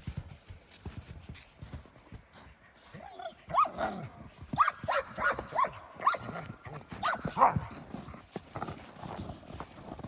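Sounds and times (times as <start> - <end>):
dog barking: 4.6 - 7.7.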